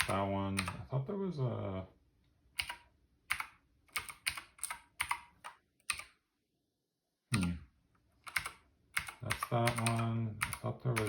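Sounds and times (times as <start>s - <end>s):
clicky keyboard keystrokes: 0.0s - 0.8s, 2.6s - 6.2s, 8.2s - 11.0s.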